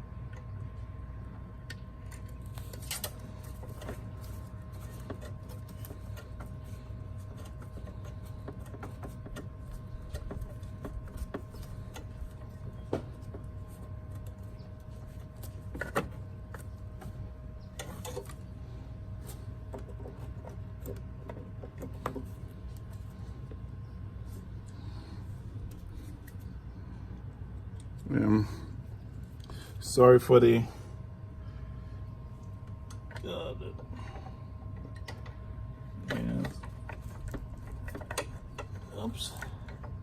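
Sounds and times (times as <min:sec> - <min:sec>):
steady low hum: 0:00.0 - 0:40.0
hand tools clicking and tapping: 0:07.3 - 0:12.6, 0:36.1 - 0:40.0.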